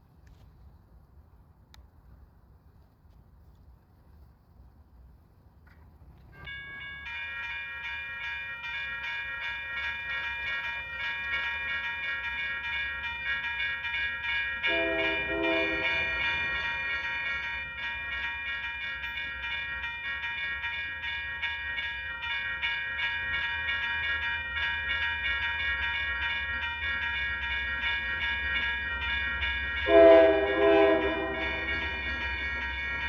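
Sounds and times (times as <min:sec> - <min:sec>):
passing train rumble: 0:04.9 - 0:33.0
crossing bell ringing: 0:06.4 - 0:33.0
locomotive horn blasts: 0:14.6 - 0:16.4, 0:29.8 - 0:32.5.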